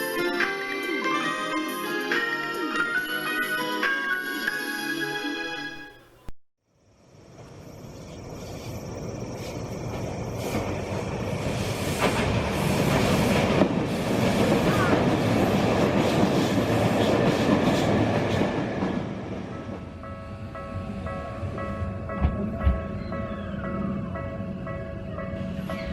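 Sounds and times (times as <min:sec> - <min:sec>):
train wheels rumbling on rails: 0:07.2 - 0:25.9.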